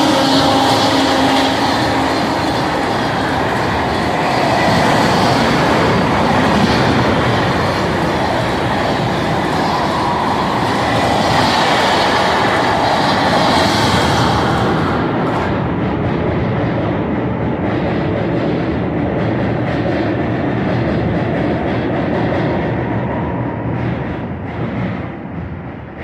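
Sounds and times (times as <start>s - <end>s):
train horn blast: 0.0s - 3.7s
train wheels clattering on rails: 0.0s - 26.0s.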